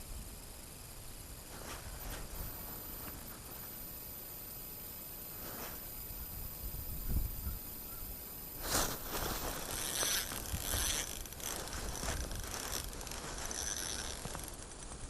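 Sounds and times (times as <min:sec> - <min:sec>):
fishing reel gears whirring: 0:02.2 - 0:15.0.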